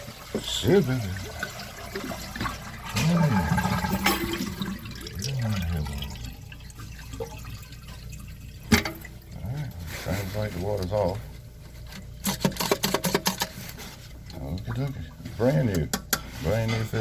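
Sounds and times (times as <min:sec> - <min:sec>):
water draining: 0:00.0 - 0:09.8, 0:14.2 - 0:15.9
toilet flushing: 0:00.0 - 0:11.2.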